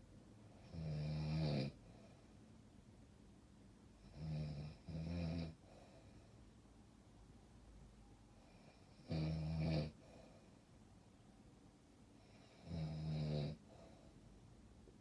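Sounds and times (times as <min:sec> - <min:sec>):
buzzing snores: 0:00.6 - 0:01.8, 0:04.0 - 0:05.6, 0:08.6 - 0:10.0, 0:12.2 - 0:13.6.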